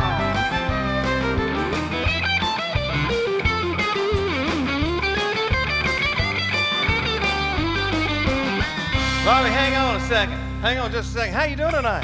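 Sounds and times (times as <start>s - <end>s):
electric guitar lead: 0.0s - 11.2s
bass and drum beat: 0.0s - 12.0s.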